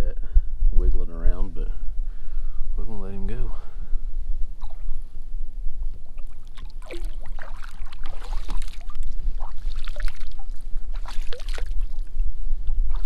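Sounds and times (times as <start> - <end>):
steady low rumble: 0.0 - 13.0
water splashing and dripping: 6.2 - 12.1.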